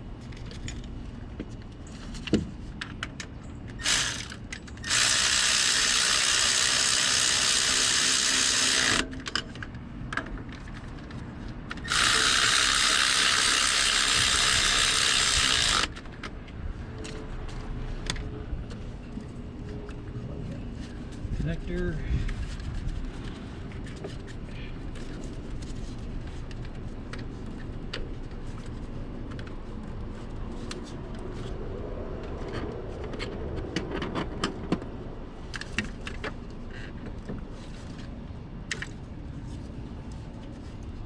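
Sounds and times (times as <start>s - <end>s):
power ratchet spinning: 3.8s - 9.2s, 11.8s - 16.0s.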